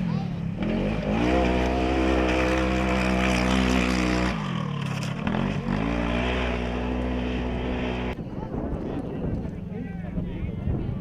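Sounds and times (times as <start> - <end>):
rally car engine revving: 0.5 - 8.2.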